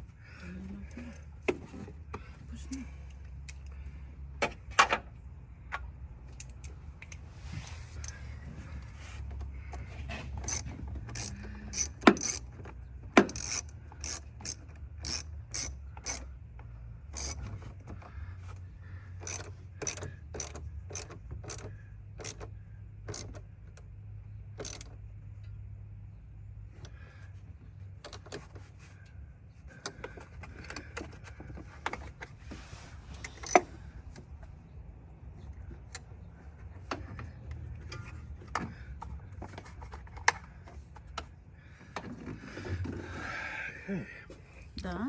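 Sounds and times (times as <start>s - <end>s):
ratchet wrench clicking: 10.4s - 12.5s, 13.2s - 16.3s, 17.1s - 17.4s, 19.2s - 23.4s, 24.6s - 24.9s
low steady hum: 20.6s - 45.0s.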